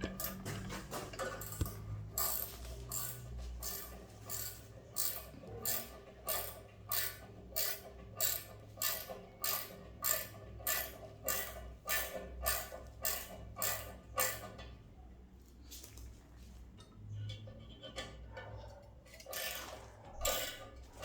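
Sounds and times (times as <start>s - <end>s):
ratchet wrench clicking: 1.3s - 14.4s.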